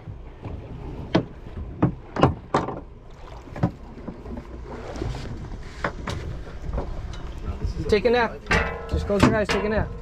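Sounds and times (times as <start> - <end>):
water slapping against hull: 0.0 - 10.0
sharp knocks: 8.5 - 9.8.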